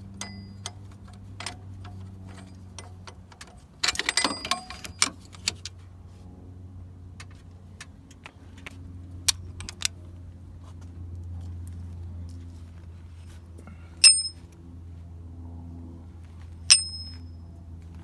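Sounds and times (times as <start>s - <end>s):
steady low hum: 0.0s - 18.0s
metal tools clinking and rattling: 0.1s - 5.6s, 14.0s - 14.4s, 16.7s - 17.2s.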